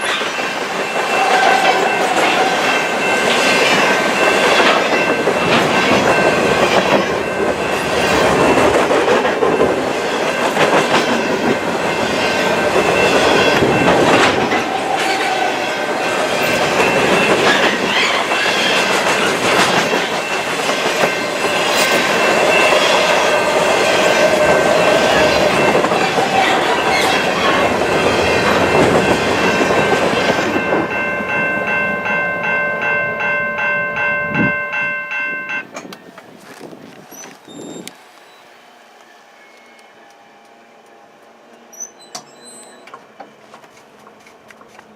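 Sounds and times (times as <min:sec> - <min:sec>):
freight train wheels clacking: 0:00.0 - 0:38.0, 0:39.5 - 0:44.9
high wheel squeal: 0:11.9 - 0:19.8, 0:21.0 - 0:30.6, 0:37.1 - 0:38.5, 0:41.7 - 0:43.0.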